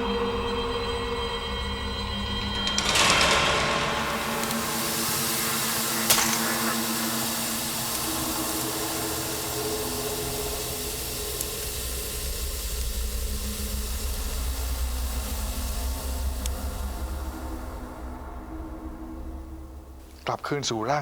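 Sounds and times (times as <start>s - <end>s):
droning tones: 0.0s - 20.2s
steady hiss: 0.0s - 21.0s
sharp crack: 4.2s - 11.7s.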